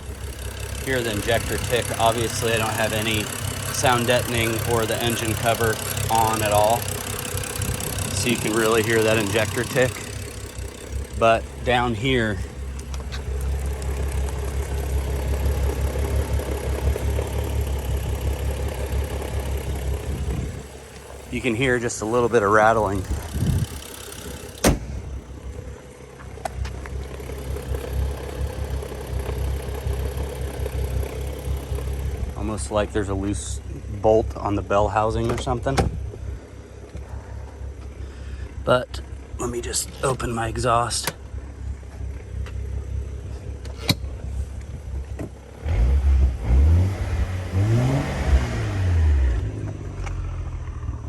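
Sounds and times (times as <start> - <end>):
flywheel rattling: 0.0 - 24.6
car engine idling: 0.0 - 51.0.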